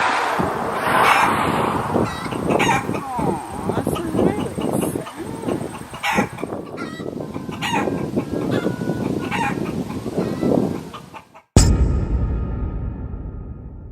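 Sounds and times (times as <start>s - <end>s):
chickens clucking: 1.9s - 11.5s.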